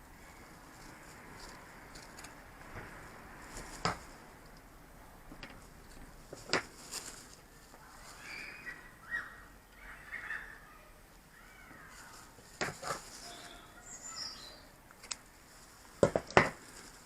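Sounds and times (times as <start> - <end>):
birds calling: 8.0 - 14.8.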